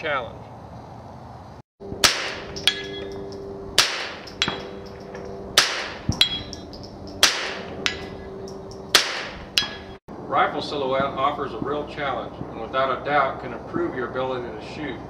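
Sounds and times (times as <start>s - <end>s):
metallic ring of steel target: 1.8s - 10.0s
rifle shots: 2.0s - 3.0s, 3.8s - 4.8s, 5.6s - 6.1s, 7.2s - 7.7s, 8.9s - 9.4s.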